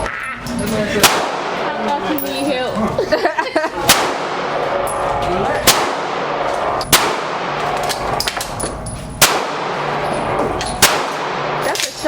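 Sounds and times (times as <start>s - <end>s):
gunshots with echo: 1.0s - 1.8s, 3.8s - 4.8s, 5.6s - 8.2s, 9.2s - 11.9s.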